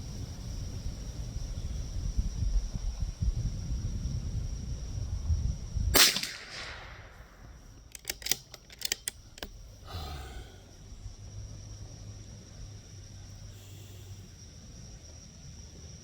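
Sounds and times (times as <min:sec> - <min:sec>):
rifle bolt clicks: 0:06.0 - 0:07.0, 0:07.7 - 0:09.6
rifle shot: 0:06.0 - 0:09.1.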